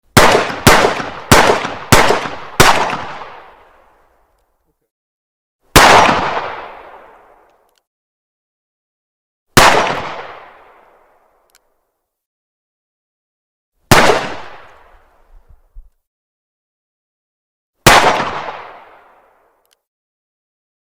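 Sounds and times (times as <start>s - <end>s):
pistol shots with echo: 0.2s - 3.8s, 5.7s - 7.4s, 9.6s - 11.0s, 13.9s - 14.9s, 17.8s - 19.2s.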